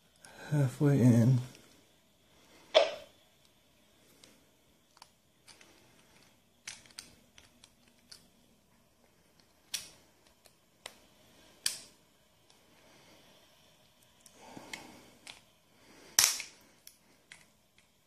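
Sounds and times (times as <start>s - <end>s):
small metal parts clicking: 4.9s - 8.3s.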